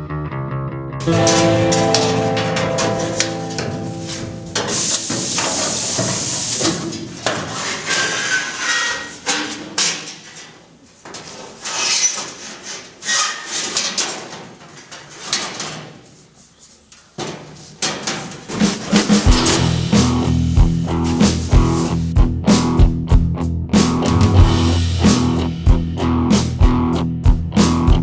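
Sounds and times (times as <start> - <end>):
bursts of hiss: 1.0 - 8.6.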